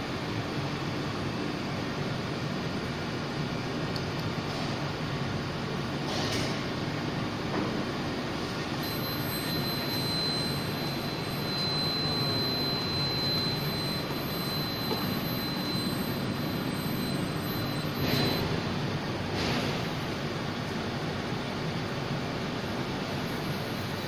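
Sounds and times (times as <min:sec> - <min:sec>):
thin high whine: 0:08.8 - 0:19.6.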